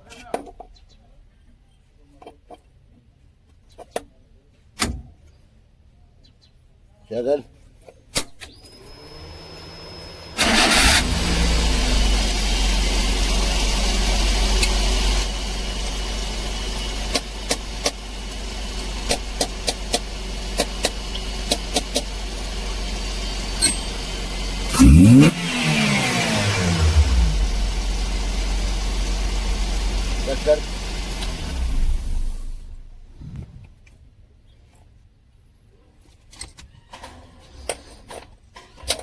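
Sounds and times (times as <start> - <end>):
van engine starting and idling: 8.6 - 33.5
engine revving: 8.8 - 33.4.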